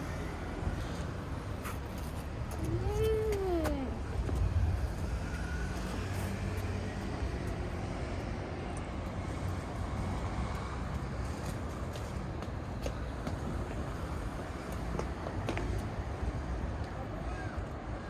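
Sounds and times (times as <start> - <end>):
vehicle engine humming: 0.0 - 11.9
outdoor street noise: 0.0 - 18.0.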